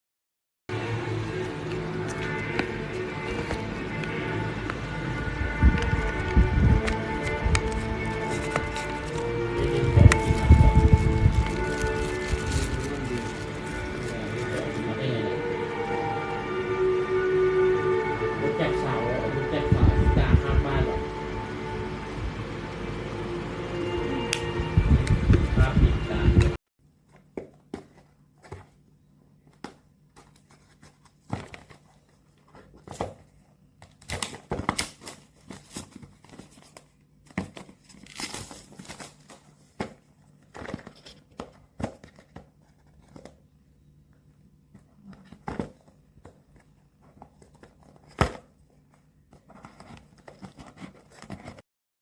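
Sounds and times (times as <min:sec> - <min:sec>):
plastic and paper crinkling: 0:05.7 - 0:14.9, 0:30.2 - 0:43.4, 0:45.0 - 0:51.6.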